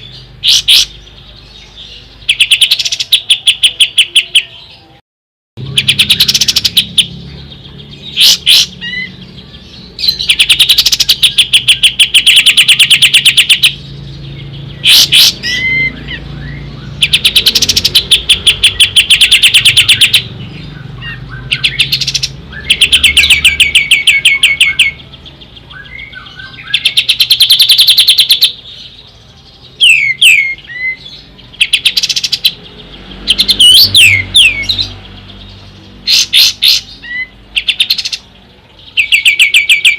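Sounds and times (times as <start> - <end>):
bird singing rapid trills: 0.0 - 5.0, 5.6 - 39.9
sweeping bird whistles: 29.8 - 32.6, 33.3 - 34.9.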